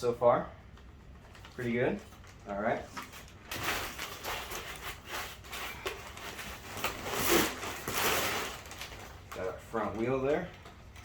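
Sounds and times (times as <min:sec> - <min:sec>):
packaging rustling and scraping: 0:01.2 - 0:11.0.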